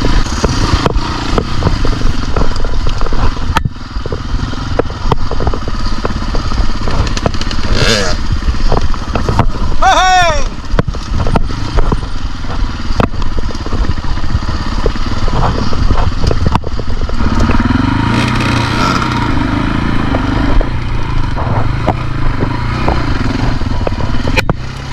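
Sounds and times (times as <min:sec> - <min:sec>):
sharp knocks and rattles: 0:00.0 - 0:09.8, 0:10.5 - 0:19.3, 0:20.0 - 0:24.9
dirt bike engine revving: 0:00.0 - 0:24.9.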